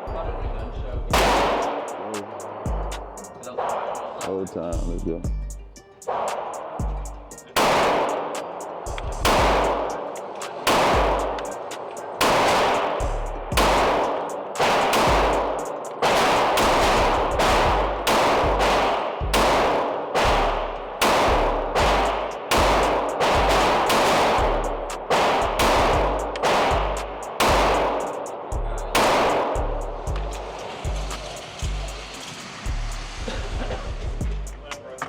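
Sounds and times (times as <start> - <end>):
music with deep bass line: 0.0 - 3.3, 4.6 - 5.9, 6.8 - 8.0, 8.7 - 10.1, 10.7 - 34.7
pistol shots echoing: 1.1 - 4.7, 5.8 - 32.6.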